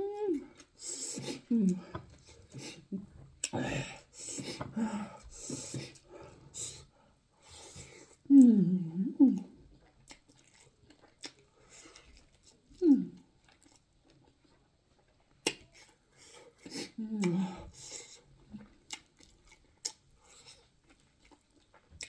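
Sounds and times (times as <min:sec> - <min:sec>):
person humming mm: 0:00.0 - 0:02.0, 0:08.3 - 0:09.6, 0:12.8 - 0:13.2, 0:16.7 - 0:17.8
person chewing with mouth clicks: 0:00.4 - 0:06.8, 0:09.3 - 0:22.0.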